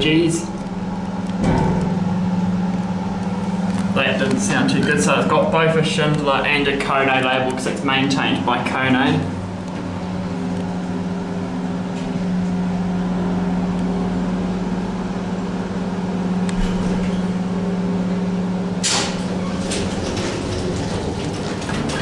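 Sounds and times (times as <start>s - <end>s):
lift pump motor humming: 0.0s - 22.0s
rushing rattling noise: 18.8s - 22.0s.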